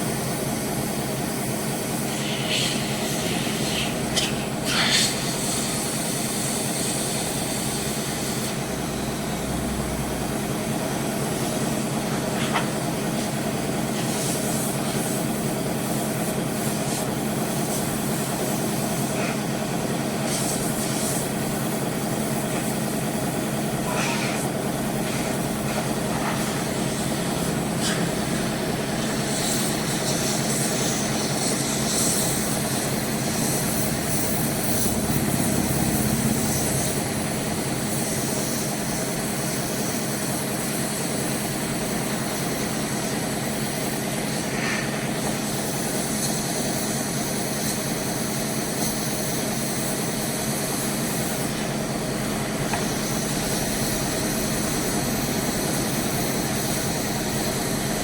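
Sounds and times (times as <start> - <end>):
electric fan whirring: 0.0 - 58.0.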